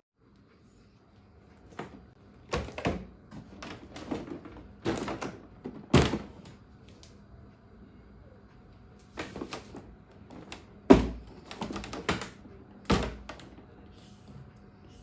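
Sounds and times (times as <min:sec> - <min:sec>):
box and plastic parts rattling: 0:01.7 - 0:06.6, 0:09.2 - 0:13.6.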